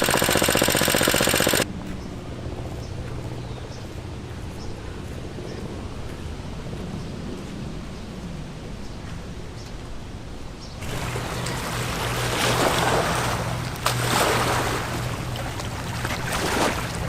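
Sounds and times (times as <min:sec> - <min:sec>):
motor humming: 0:00.0 - 0:01.6, 0:10.8 - 0:17.0
rushing splashing water: 0:10.8 - 0:17.0.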